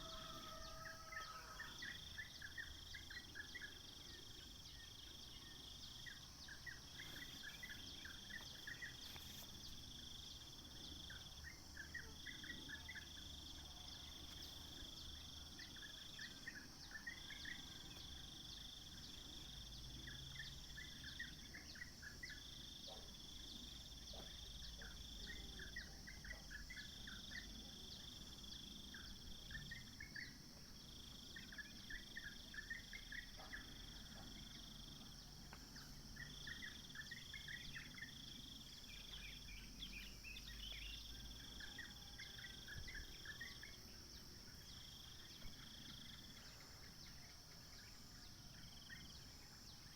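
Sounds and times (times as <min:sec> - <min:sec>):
insects chorus: 0:00.0 - 0:49.9
songbird singing: 0:00.0 - 0:49.9.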